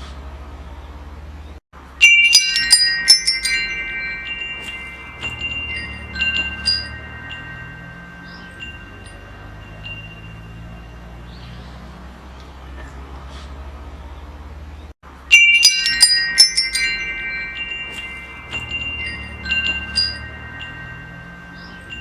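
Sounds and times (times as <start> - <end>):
metal wind chimes jangling: 1.8 - 11.8, 15.1 - 22.0.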